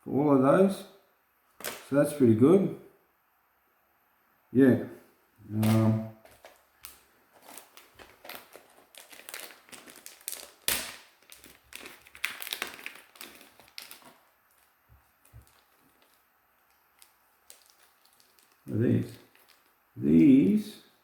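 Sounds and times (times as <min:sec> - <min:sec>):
plastic packets crinkling: 0:05.6 - 0:20.8.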